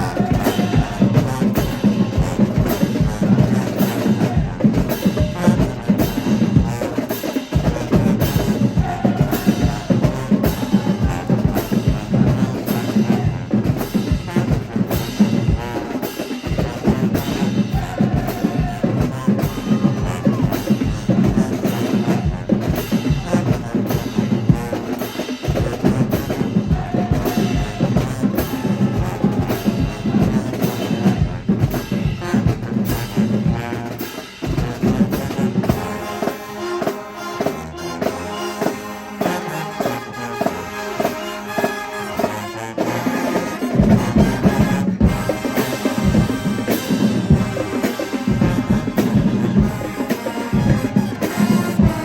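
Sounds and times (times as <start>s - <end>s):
marching band drums and brass: 0.0s - 52.0s.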